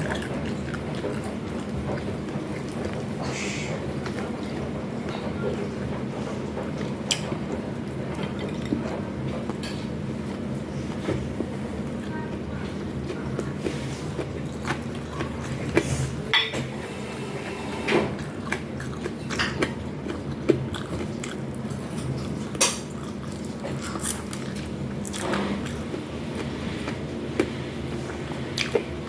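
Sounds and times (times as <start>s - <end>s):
person chewing food: 0.0s - 16.3s, 18.1s - 29.0s
utensils clinking on dishes: 8.1s - 10.0s, 21.7s - 25.8s.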